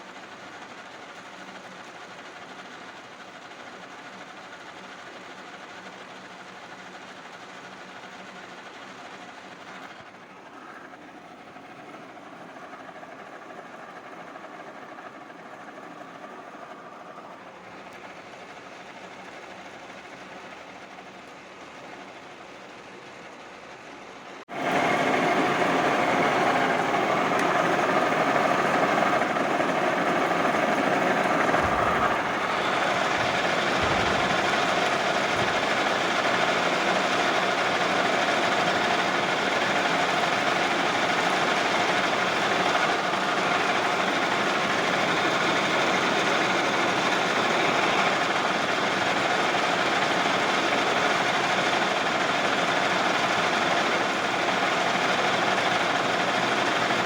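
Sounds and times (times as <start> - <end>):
metal lathe droning: 24.5 - 57.0.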